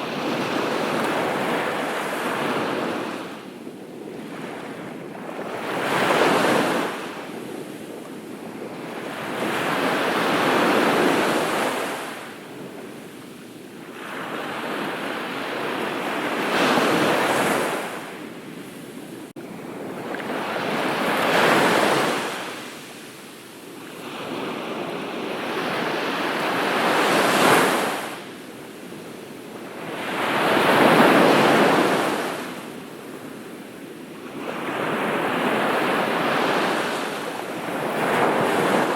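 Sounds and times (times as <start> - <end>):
ocean waves breaking: 0.0 - 3.4, 34.3 - 38.9.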